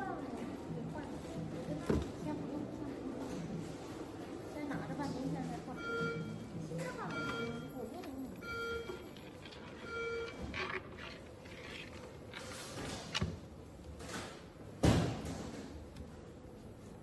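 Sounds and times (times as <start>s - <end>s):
cafe ambience: 7.1s - 13.3s.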